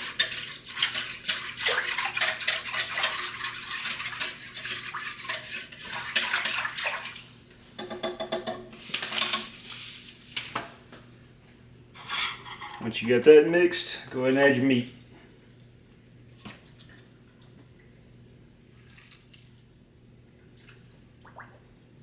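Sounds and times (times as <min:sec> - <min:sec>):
whisk clinking against a pot: 0:00.0 - 0:07.0
liquid sloshing: 0:18.7 - 0:19.6.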